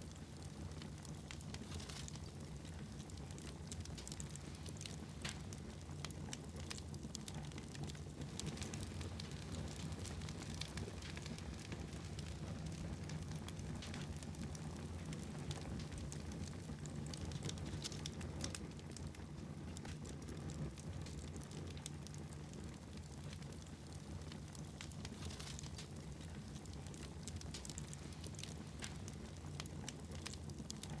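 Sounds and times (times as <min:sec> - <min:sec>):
fire popping: 0:00.0 - 0:31.0
wood fire crackling: 0:00.0 - 0:31.0.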